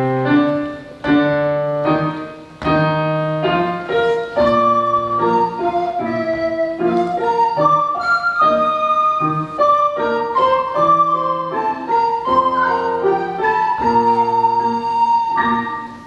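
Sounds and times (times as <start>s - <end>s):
recorder ensemble playing: 3.2s - 16.0s.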